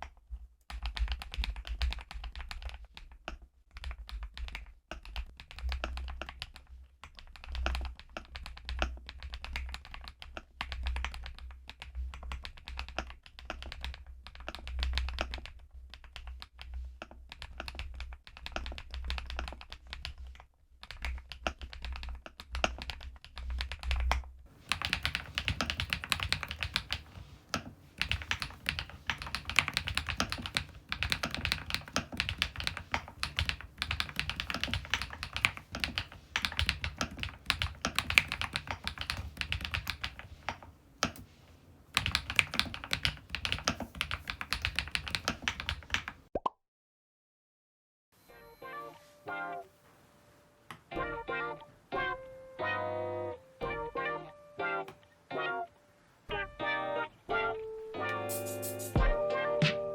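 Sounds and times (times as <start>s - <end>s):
mechanical keyboard typing: 0.7s - 3.2s, 3.8s - 16.6s, 17.3s - 20.2s, 20.8s - 41.2s, 41.9s - 46.2s.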